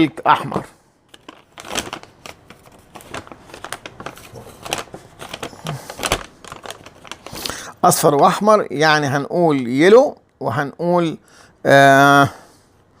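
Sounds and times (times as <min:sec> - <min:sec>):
hands rustling and crinkling: 0:01.0 - 0:07.7.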